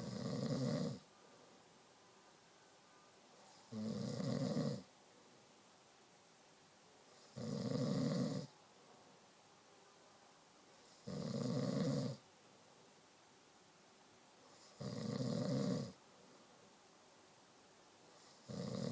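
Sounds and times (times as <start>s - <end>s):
person snoring: 0.0s - 1.0s, 3.7s - 4.9s, 7.3s - 8.5s, 11.0s - 12.2s, 14.6s - 16.0s, 18.2s - 18.9s.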